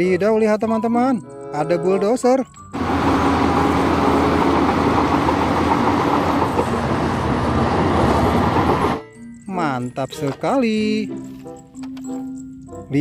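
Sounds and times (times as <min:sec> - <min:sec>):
bulldozer engine running: 0:02.6 - 0:09.0.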